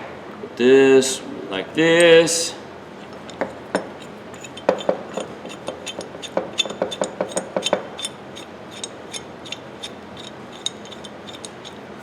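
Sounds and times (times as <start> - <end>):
wrench parts clicking metallically: 3.0 - 12.0.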